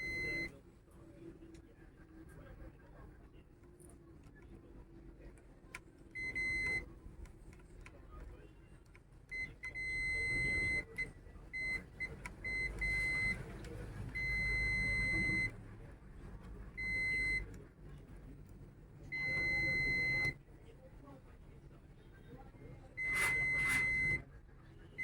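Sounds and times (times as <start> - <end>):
multimeter continuity beeping: 0.0 - 0.5, 9.3 - 13.4, 14.1 - 15.5, 16.8 - 17.5, 23.0 - 24.2.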